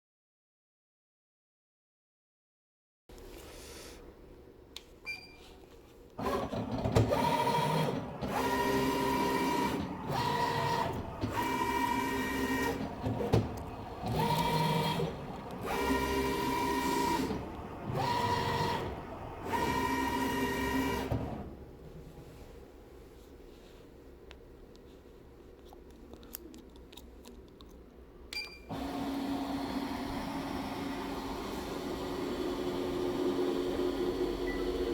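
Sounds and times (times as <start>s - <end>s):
cutting plotter motors whining: 6.2s - 21.6s, 28.7s - 34.9s.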